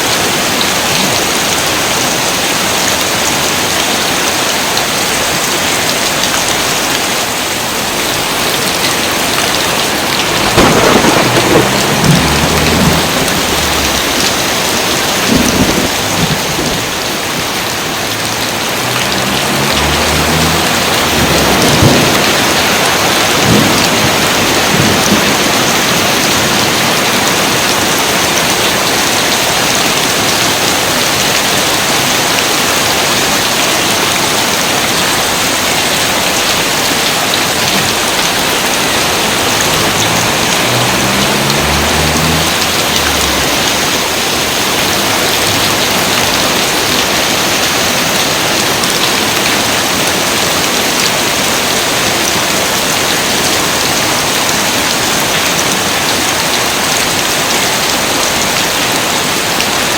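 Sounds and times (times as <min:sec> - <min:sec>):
heavy rain: 0:00.0 - 0:59.9
rolling thunder rumbles: 0:08.3 - 0:27.6, 0:37.9 - 0:47.0
sharp thunder claps: 0:09.5 - 0:16.9, 0:19.1 - 0:26.4.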